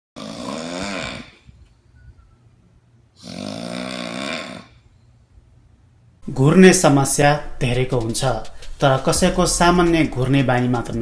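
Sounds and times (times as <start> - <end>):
person snoring: 0.2 - 1.4, 3.2 - 4.8.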